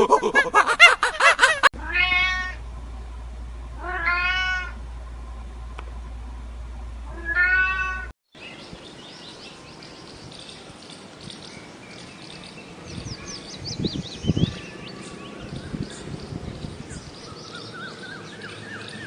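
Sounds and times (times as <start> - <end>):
cat meowing: 1.8 - 2.6, 3.8 - 4.8, 7.1 - 8.1
birds chirping: 8.3 - 19.0.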